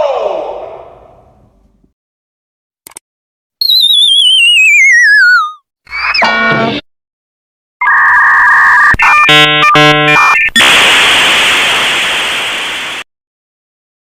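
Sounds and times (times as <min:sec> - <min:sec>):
two-tone electronic buzz: 0:09.0 - 0:10.9
loud noise hiss: 0:10.6 - 0:13.0.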